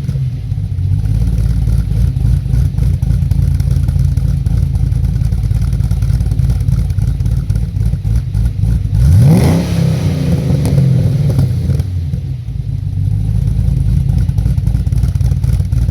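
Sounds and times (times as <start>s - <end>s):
car engine idling with loping beat: 0.0s - 15.9s
engine revving: 7.8s - 12.4s.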